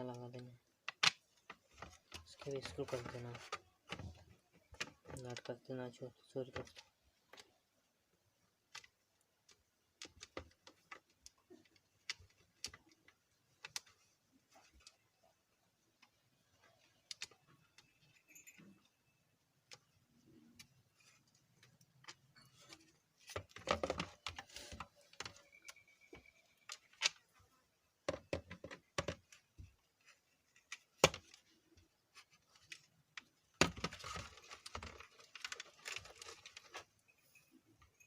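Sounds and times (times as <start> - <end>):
small parts clicking and scraping: 8.4 - 27.6, 28.2 - 38.0
parts rattling: 16.0 - 27.5.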